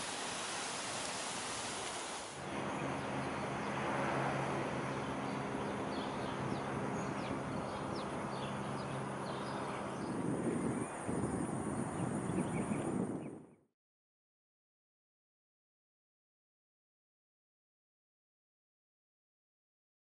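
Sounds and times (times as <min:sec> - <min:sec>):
birds chirping: 0:00.0 - 0:13.5.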